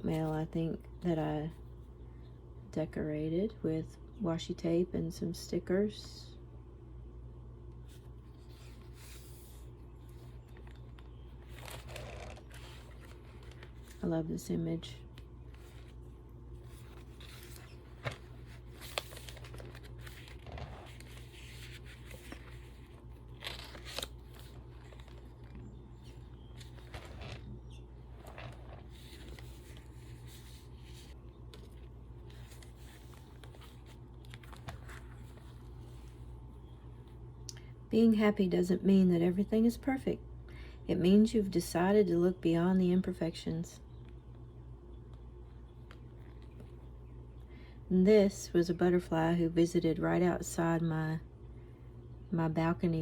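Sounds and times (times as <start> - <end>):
low steady hum: 0.0 - 53.0
paper pages rustling: 7.9 - 14.1, 14.8 - 36.4.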